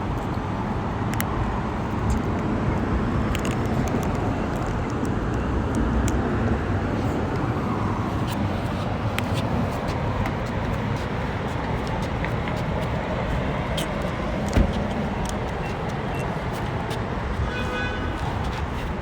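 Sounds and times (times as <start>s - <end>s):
road traffic rumble: 0.0s - 19.0s
thump: 14.5s - 15.0s.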